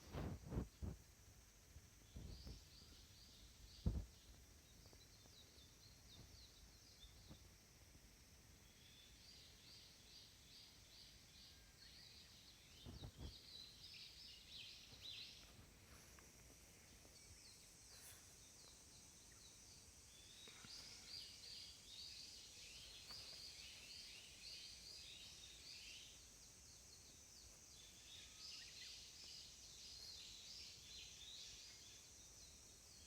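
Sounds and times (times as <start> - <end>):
steady high hiss: 0.0 - 33.0.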